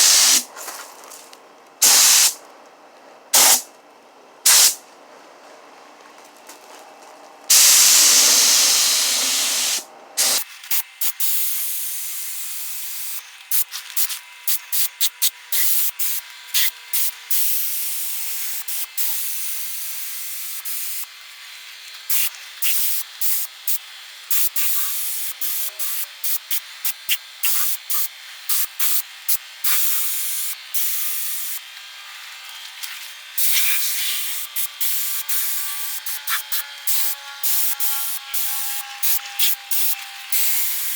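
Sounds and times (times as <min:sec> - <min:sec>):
paint spray gun hissing: 0:00.0 - 0:00.5, 0:01.8 - 0:02.4, 0:03.4 - 0:03.7, 0:04.5 - 0:04.8, 0:07.5 - 0:21.1, 0:22.0 - 0:31.6, 0:33.0 - 0:40.9.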